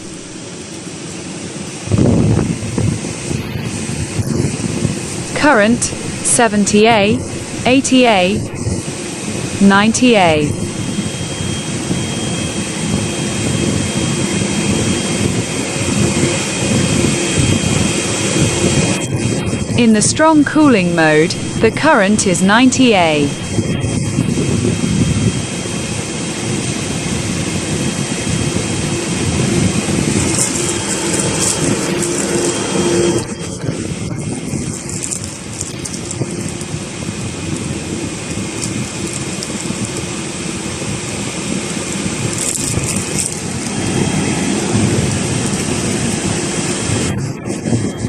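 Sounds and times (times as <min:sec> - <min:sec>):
air conditioner whooshing hum: 0:05.2 - 0:08.8
faint steady tones: 0:05.2 - 0:11.8, 0:19.7 - 0:24.0.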